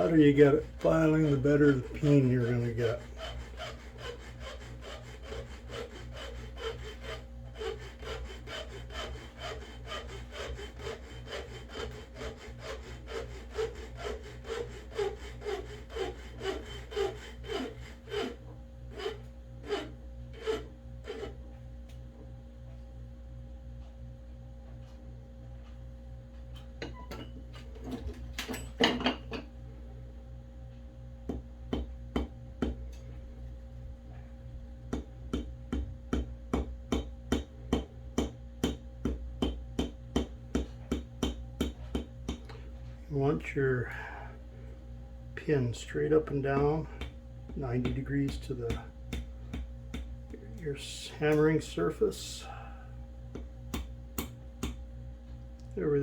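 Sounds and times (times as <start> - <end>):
hand file scraping metal: 0.0 - 21.4, 46.1 - 52.5.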